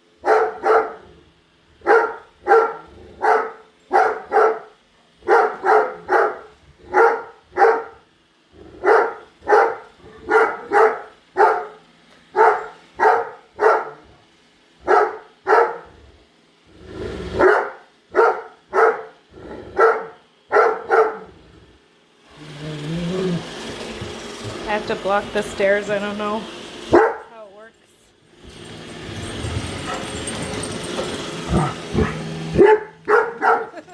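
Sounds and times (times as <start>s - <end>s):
dog barking: 0.2s - 1.0s, 1.8s - 8.0s, 8.8s - 14.0s, 14.8s - 15.9s, 17.4s - 19.2s, 19.8s - 21.3s, 26.9s - 27.3s, 31.5s - 33.9s
robot vacuum whirring hum: 21.3s - 27.0s, 28.2s - 33.9s.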